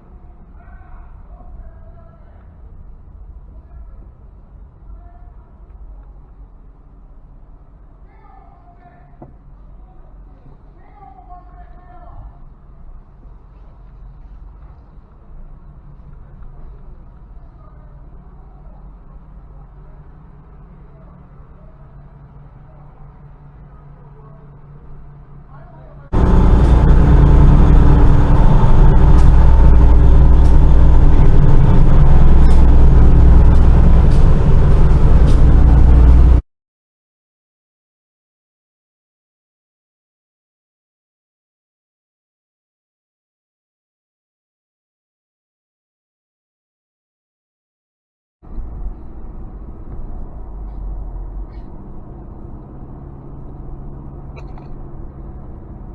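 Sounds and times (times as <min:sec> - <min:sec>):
vehicle engine deep hum: 0:12.4 - 0:36.4, 0:48.5 - 0:55.9.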